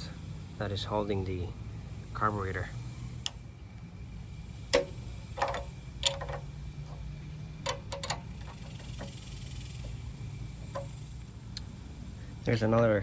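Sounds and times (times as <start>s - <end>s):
metallic clicks of hand tools: 4.7s - 7.0s, 7.6s - 9.2s.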